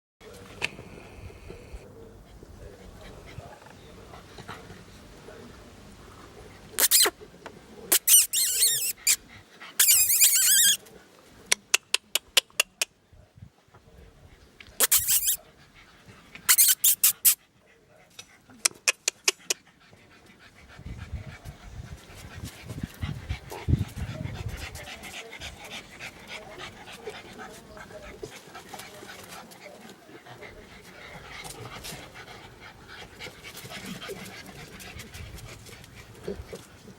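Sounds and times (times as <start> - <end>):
puppies squealing and yipping: 6.8 - 7.1, 7.9 - 9.2, 9.8 - 10.8, 14.8 - 15.4, 16.5 - 17.4
dog panting: 14.8 - 36.9.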